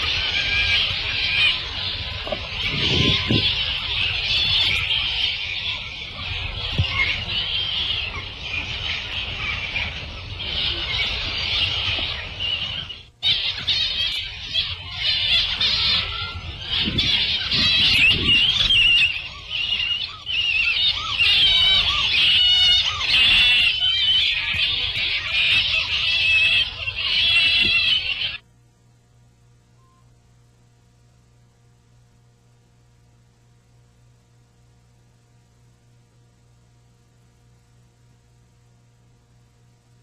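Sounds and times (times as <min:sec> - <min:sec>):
low animal calls: 0:00.0 - 0:28.4
tropical birds chirping and squawking: 0:00.0 - 0:28.4.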